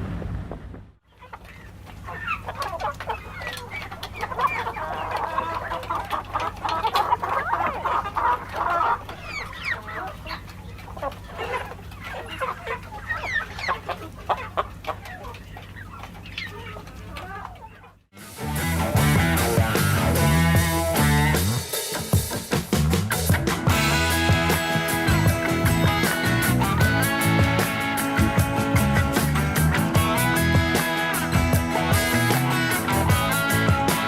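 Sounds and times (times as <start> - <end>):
low electrical hum: 0.0 - 18.1
flock of birds calling: 1.1 - 21.7, 23.1 - 34.0.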